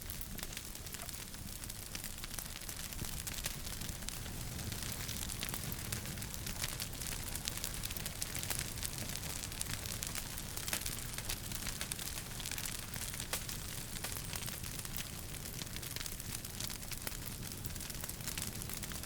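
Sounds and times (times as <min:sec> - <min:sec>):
wood fire crackling: 0:00.0 - 0:19.0.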